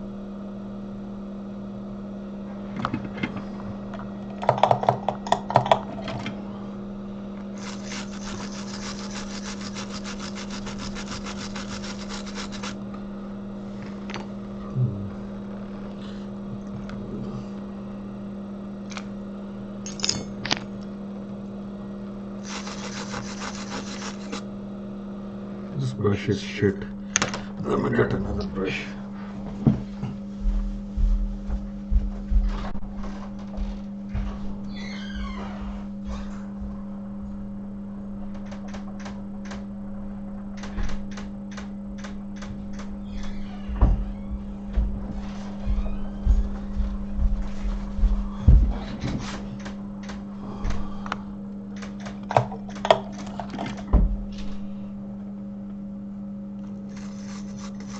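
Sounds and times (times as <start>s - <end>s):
steady low hum: 0.0s - 57.9s
small brush scrubbing circuit board: 7.6s - 12.8s, 22.4s - 24.4s, 56.9s - 57.9s.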